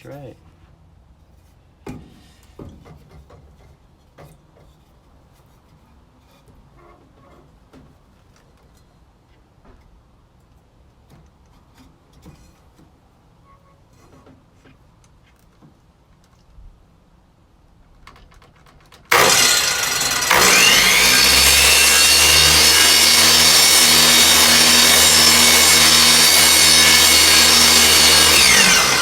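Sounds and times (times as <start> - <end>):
knocks and clicks on wood: 18.0 - 19.1.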